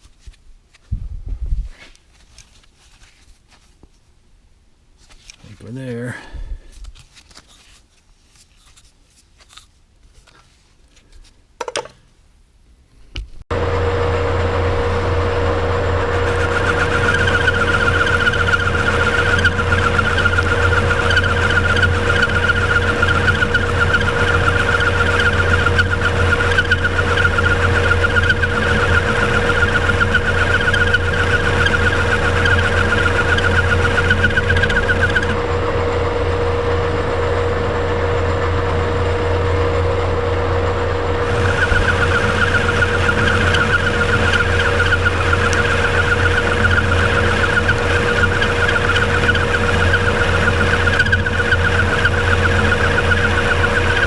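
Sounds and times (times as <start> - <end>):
higher grainy tone: 13.5 - 21.0
metal lathe humming and whining: 13.5 - 54.0.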